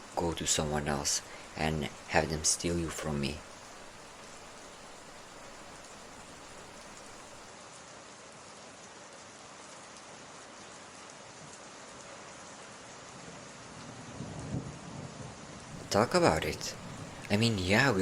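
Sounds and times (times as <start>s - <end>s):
rain falling: 0.0s - 14.6s, 15.3s - 18.0s
low rumble of thunder: 14.1s - 18.0s.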